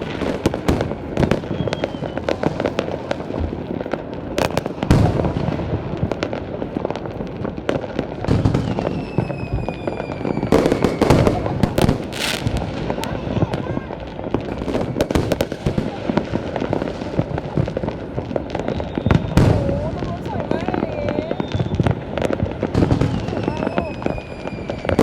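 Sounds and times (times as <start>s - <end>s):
fireworks bangs and crackles: 0.0s - 25.0s
falling whistle: 1.3s - 2.4s, 8.6s - 11.0s, 18.6s - 19.4s, 21.3s - 21.9s.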